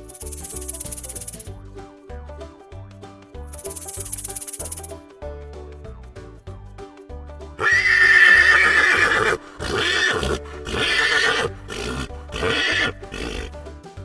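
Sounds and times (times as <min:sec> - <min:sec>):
background music: 0:00.0 - 0:14.0
horse neighing: 0:07.6 - 0:13.6.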